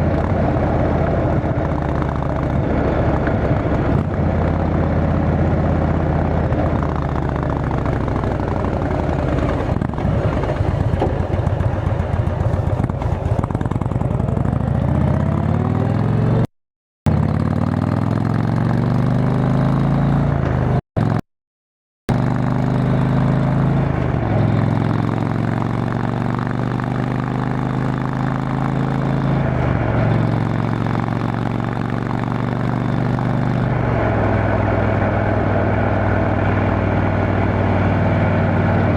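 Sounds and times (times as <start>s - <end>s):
motorcycle engine accelerating: 0.0s - 16.5s, 17.1s - 21.2s, 22.1s - 38.9s.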